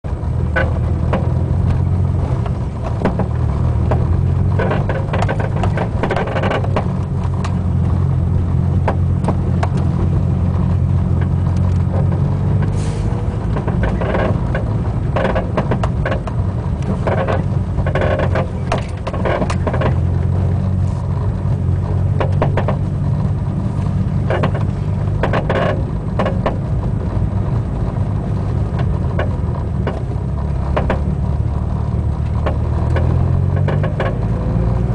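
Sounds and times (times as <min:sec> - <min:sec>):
moving car drone: 0:00.0 - 0:34.9
suspension creaking and clunking: 0:00.1 - 0:34.9.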